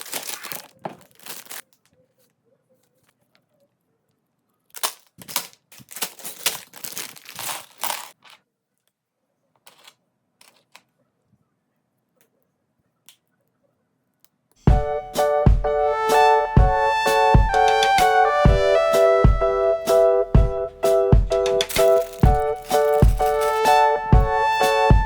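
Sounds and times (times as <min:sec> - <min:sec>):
packaging crinkling and tearing: 0:00.0 - 0:01.9, 0:04.7 - 0:08.4, 0:21.6 - 0:23.7
plastic bricks clicking: 0:21.6 - 0:23.7.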